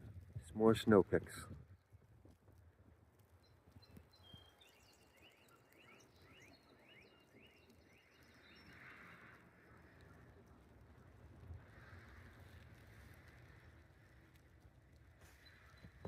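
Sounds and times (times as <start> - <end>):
outdoor background noise: 0.0 - 16.0
songbird chirping: 3.4 - 10.2.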